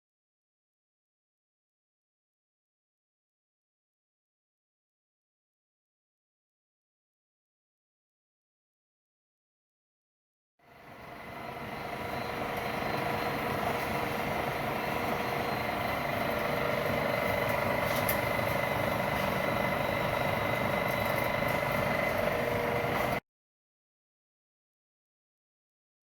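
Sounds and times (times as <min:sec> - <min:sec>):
metal lathe whining: 0:10.7 - 0:23.2.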